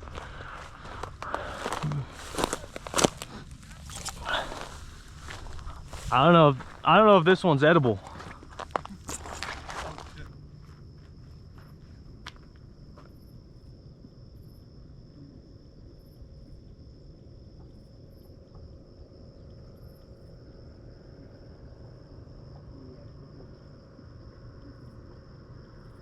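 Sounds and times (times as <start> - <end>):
wind rumble on microphone: 0.0 - 6.9
insects trilling: 0.0 - 26.0.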